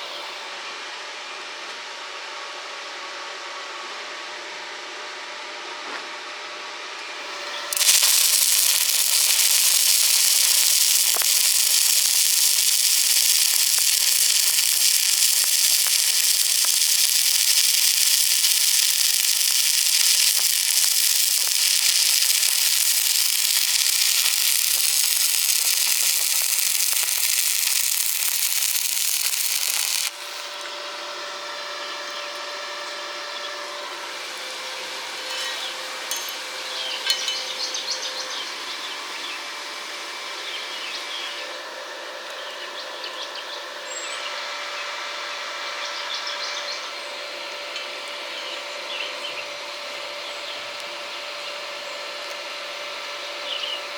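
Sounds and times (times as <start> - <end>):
welding arc hissing: 7.3 - 30.6.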